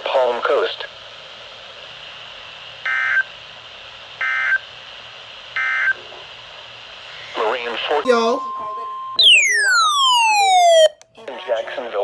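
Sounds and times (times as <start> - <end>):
steady radio hiss: 0.0 - 2.8, 4.7 - 8.4
digital data tone bursts: 9.2 - 11.0.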